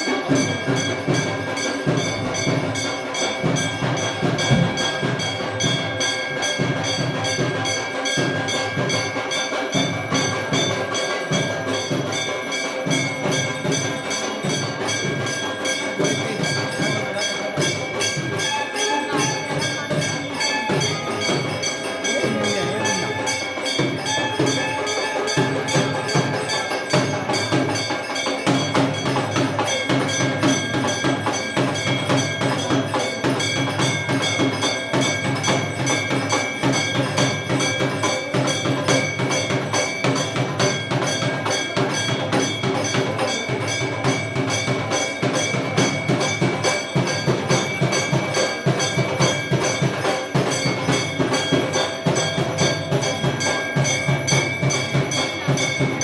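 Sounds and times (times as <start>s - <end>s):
bells and gongs struck rapidly: 0.0s - 56.0s
low drum beat: 3.4s - 5.9s.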